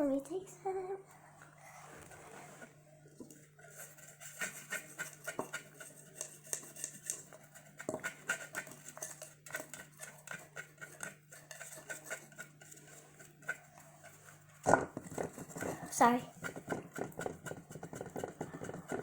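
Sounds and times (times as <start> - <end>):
faint low hum: 0.0 - 4.3.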